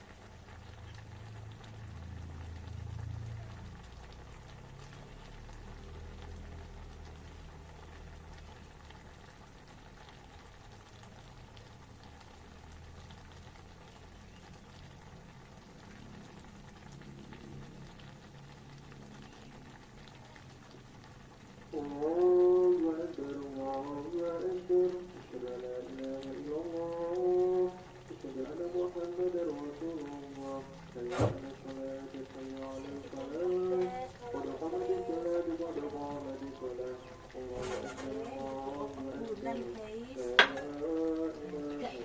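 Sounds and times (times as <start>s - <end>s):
pot bubbling at a boil: 0.0s - 42.0s.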